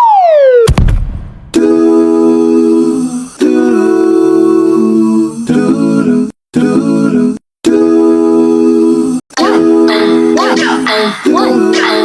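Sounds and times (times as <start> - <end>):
cartoon music humming notes: 9.4 - 12.0.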